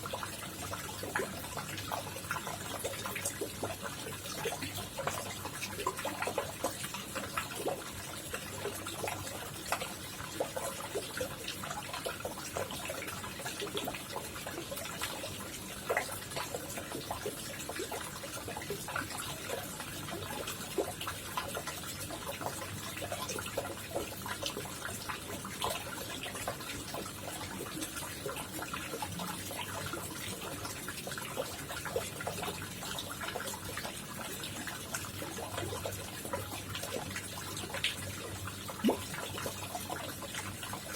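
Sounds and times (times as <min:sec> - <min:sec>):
pond water trickling and splashing: 0:00.0 - 0:40.9
water dripping and bubbling: 0:00.0 - 0:40.9.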